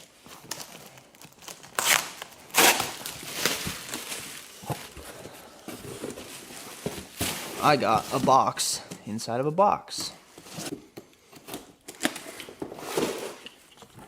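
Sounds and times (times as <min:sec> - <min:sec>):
cardboard box rustling and scraping: 0:03.2 - 0:08.4, 0:12.6 - 0:13.5.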